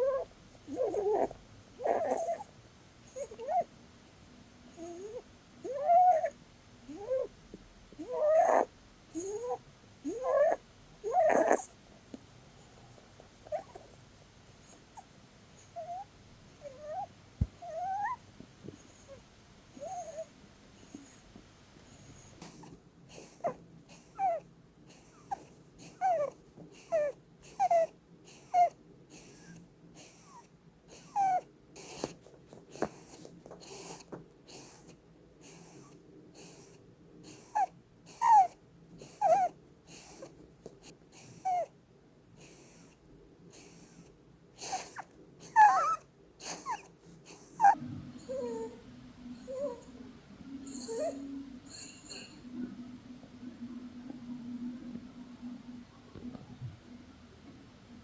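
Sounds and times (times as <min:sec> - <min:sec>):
rabbit snoring with whistling squeaks: 0:00.0 - 0:03.7, 0:04.7 - 0:07.4, 0:08.0 - 0:11.8, 0:13.4 - 0:41.8, 0:42.4 - 0:56.3.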